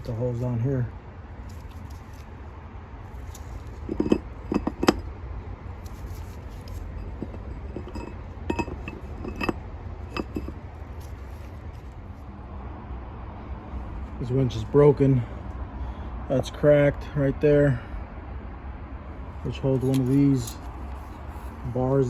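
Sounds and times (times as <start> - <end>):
metal parts clinking: 3.2 - 5.0, 5.8 - 12.0, 19.7 - 21.7.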